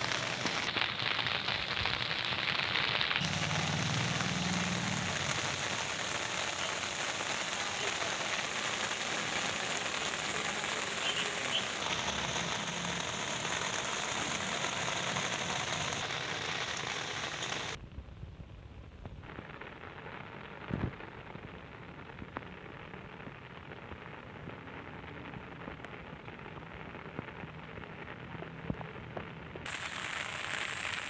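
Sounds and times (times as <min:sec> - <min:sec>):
steady rain falling: 0:00.0 - 0:17.8, 0:18.9 - 0:31.0.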